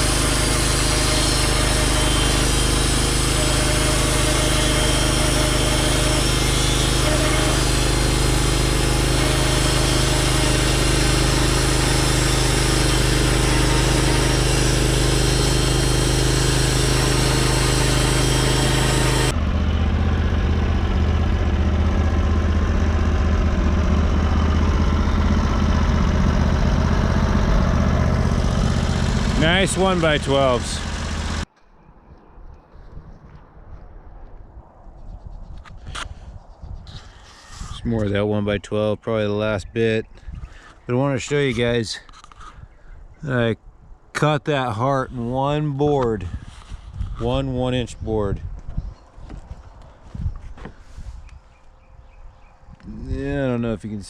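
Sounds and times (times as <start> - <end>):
bandsaw blade sawing log: 0.0 - 31.5
sawmill engine drone: 0.0 - 31.5.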